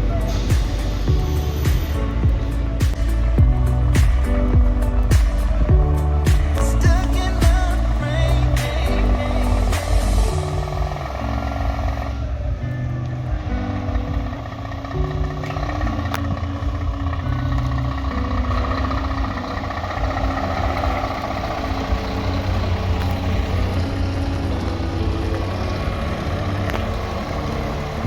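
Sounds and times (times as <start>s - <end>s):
diesel truck engines rumbling: 0.0s - 28.0s.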